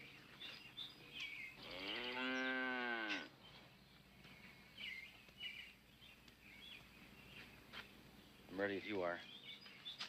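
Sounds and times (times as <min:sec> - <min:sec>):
cow mooing: 0:01.6 - 0:03.3.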